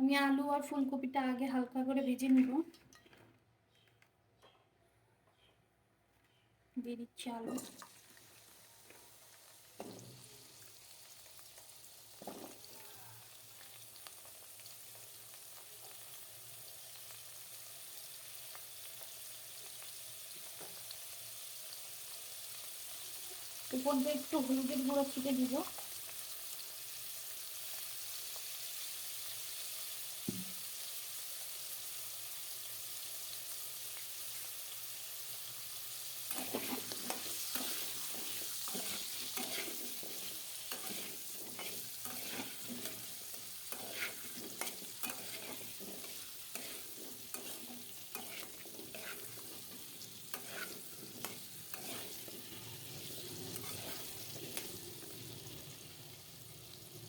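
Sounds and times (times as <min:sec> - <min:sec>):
potatoes sizzling in hot oil: 0:07.6 - 0:57.0
spatula scraping and knocking pan: 0:36.2 - 0:55.1.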